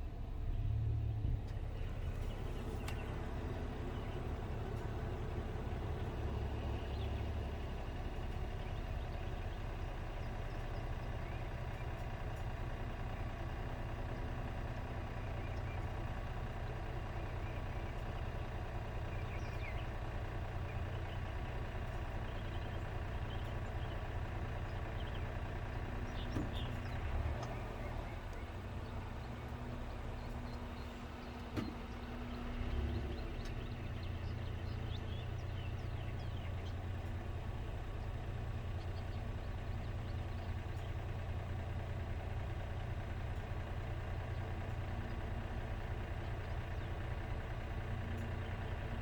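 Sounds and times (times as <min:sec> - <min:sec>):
car engine idling hum: 0:00.0 - 0:49.0.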